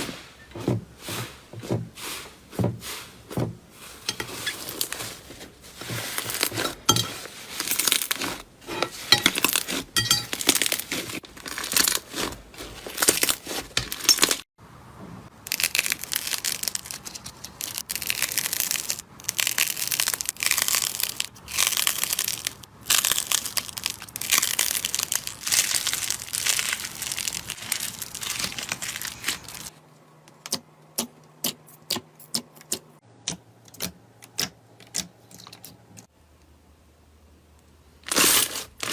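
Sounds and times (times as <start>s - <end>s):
slime crackling and crunching: 4.2s - 14.4s, 15.4s - 29.7s, 38.0s - 38.9s.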